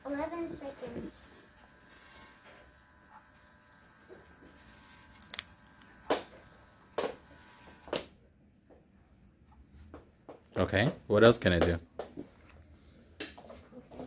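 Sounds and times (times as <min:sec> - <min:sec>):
small motor whine: 0:00.0 - 0:08.1.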